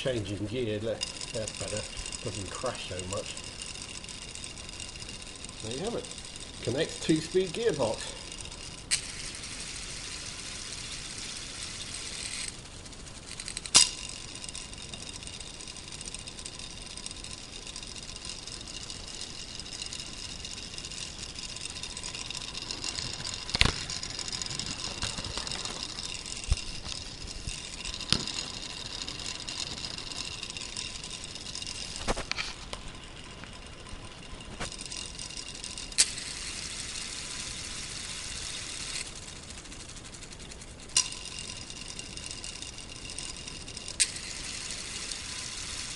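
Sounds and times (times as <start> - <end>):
high gear whine: 0.0 - 45.9
sharp plastic clacks: 13.3 - 33.6.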